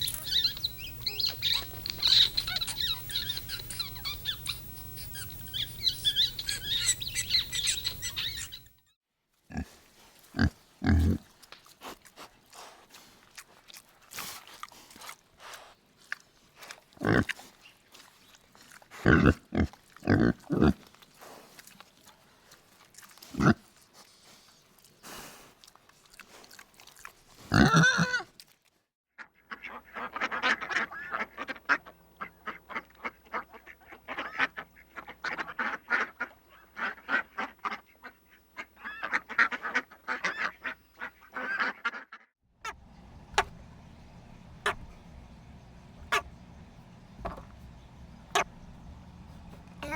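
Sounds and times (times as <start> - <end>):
pig grunting and squealing: 0.0 - 8.7, 9.5 - 11.3, 17.0 - 17.6, 18.6 - 21.0, 23.2 - 23.8, 27.0 - 28.3, 44.6 - 45.1, 46.0 - 46.4, 48.3 - 49.9
waterfowl quacking and honking: 0.0 - 8.7, 29.2 - 43.6, 44.6 - 45.1, 46.0 - 46.5, 48.3 - 48.6.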